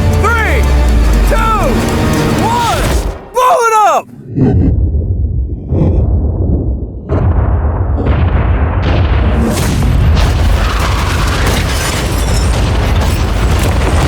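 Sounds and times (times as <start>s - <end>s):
heavy low rumble: 4.1s - 11.0s
explosion booms: 4.5s - 14.0s.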